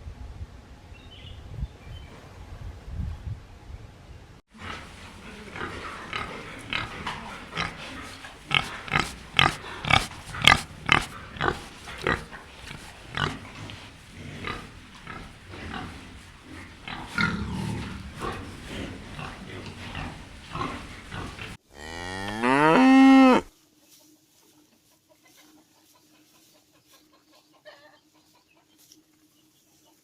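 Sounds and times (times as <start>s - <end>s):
pig grunting: 2.0s - 3.0s, 4.5s - 23.5s.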